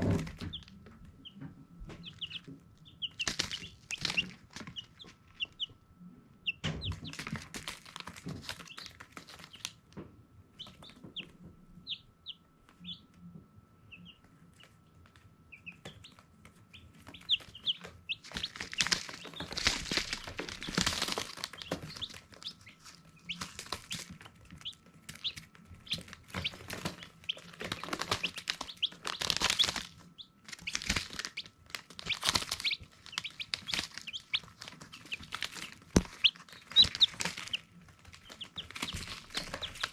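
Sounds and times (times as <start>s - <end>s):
baby chicks peeping: 0.0s - 39.9s
rustling: 16.7s - 39.9s.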